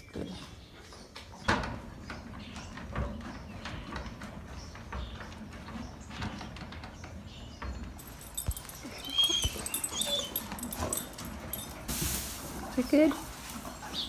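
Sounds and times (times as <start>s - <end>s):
animal whining high-pitched: 8.6s - 11.2s.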